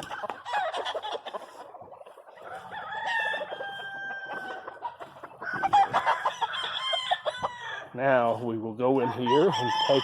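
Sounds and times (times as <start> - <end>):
chickens clucking: 0.0 - 10.0
rooster crowing: 2.4 - 4.7, 5.4 - 7.9, 9.0 - 10.0.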